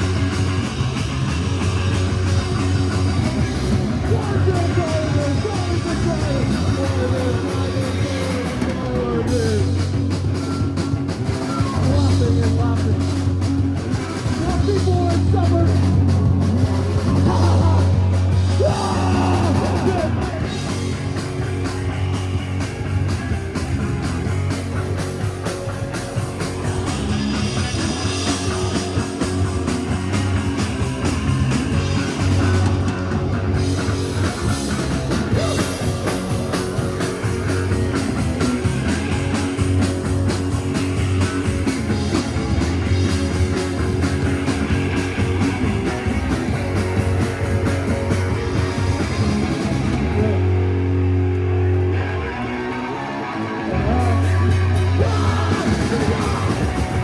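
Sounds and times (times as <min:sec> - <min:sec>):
bass guitar: 0:00.0 - 0:57.0
drums: 0:00.0 - 0:57.0
electric guitar: 0:00.0 - 0:57.0
person singing: 0:17.1 - 0:20.5, 0:53.8 - 0:57.0.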